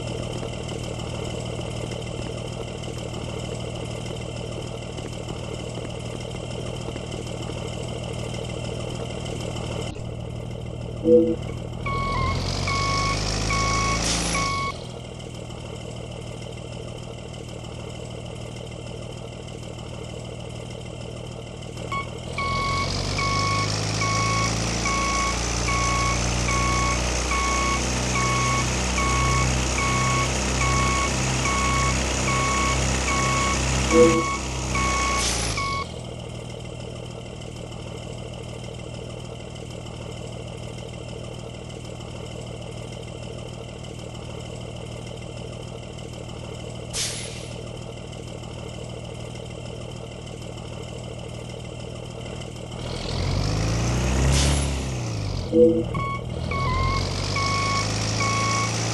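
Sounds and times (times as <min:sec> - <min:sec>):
large engine running: 0:00.0 - 0:58.9
bus horn pulsing beep: 0:11.0 - 0:14.8, 0:21.9 - 0:35.9, 0:55.5 - 0:58.8.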